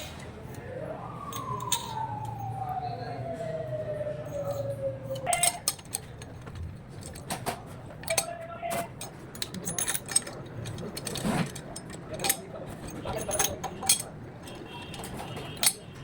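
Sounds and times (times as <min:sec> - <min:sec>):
metallic clinks of hand tools: 0:05.2 - 0:06.4, 0:08.0 - 0:15.9.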